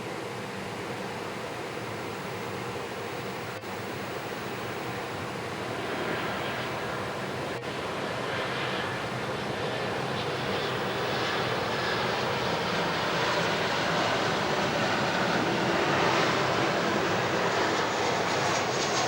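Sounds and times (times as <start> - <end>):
airliner engines rushing drone: 0.0 - 19.0.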